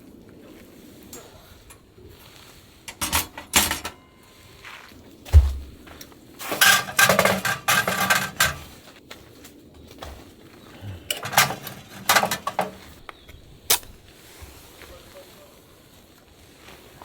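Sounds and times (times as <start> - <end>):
camping cookware clattering: 1.1 - 1.9, 2.8 - 4.3, 5.3 - 8.8, 10.8 - 13.1
dull thump: 5.3 - 6.0.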